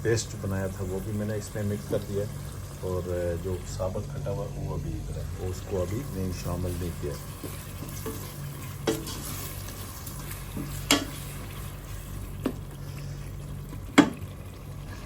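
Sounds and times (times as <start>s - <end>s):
food sizzling in a pan: 0.0s - 15.0s
spoon knocking against a pan: 7.4s - 9.2s, 10.6s - 11.2s, 14.0s - 14.2s.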